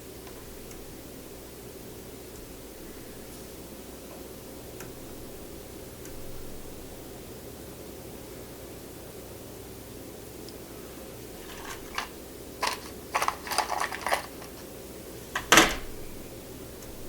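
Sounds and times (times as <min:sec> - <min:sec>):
steady low hum: 0:00.0 - 0:17.0
short clicks and rattles: 0:11.4 - 0:14.6.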